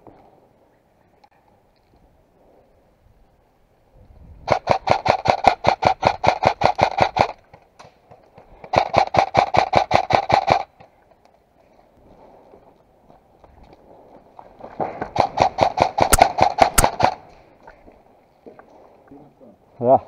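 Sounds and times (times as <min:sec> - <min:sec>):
airsoft rifle full-auto bursts: 0:15.2 - 0:17.2.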